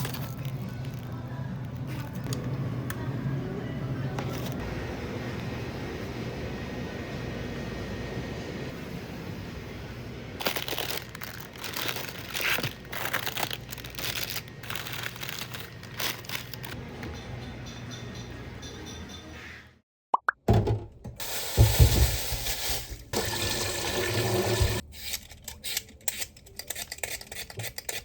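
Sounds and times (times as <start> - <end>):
packaging crinkling: 0.0 - 2.3, 10.4 - 16.8
low background hum: 0.0 - 19.8.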